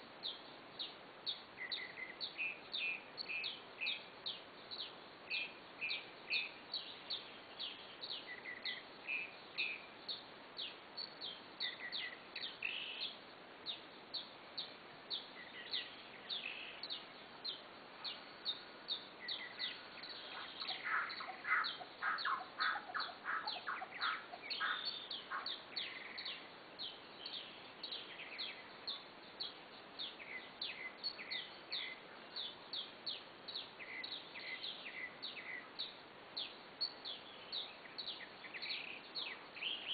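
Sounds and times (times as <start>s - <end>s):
animal calls with high chirps: 19.3s - 26.5s
rapid lower-pitched animal calls: 20.2s - 26.3s.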